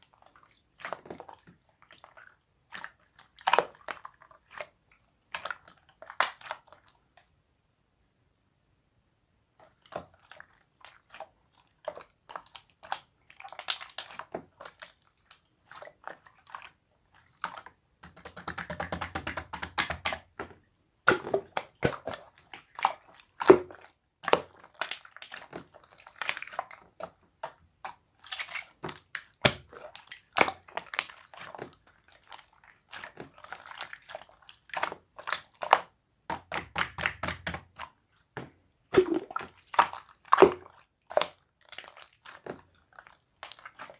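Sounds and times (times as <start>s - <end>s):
slime squishing by hand: 0.0s - 7.4s, 9.6s - 43.9s.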